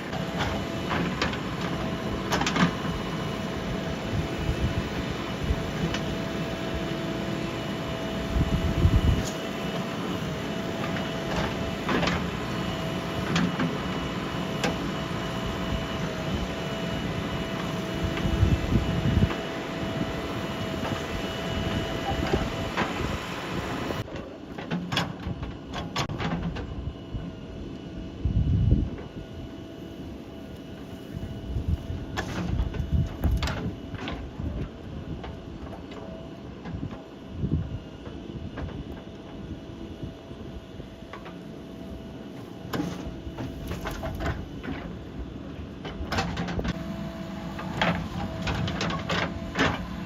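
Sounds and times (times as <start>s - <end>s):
diesel engine running with whine: 0.0s - 50.0s.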